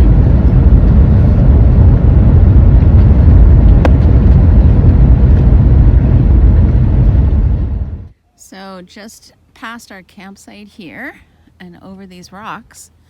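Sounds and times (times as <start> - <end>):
vehicle road and engine rumble: 0.0 - 8.1.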